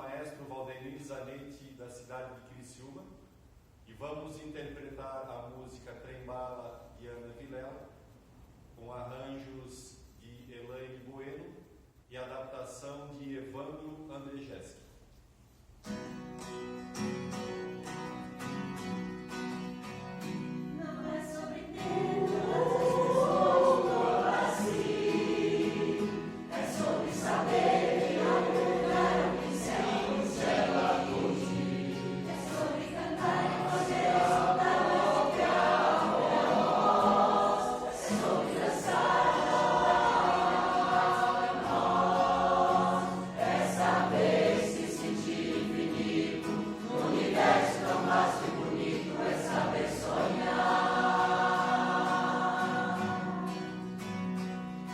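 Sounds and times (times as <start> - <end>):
low musical accompaniment: 16.0 - 54.9
choir singing in parts: 20.6 - 54.0.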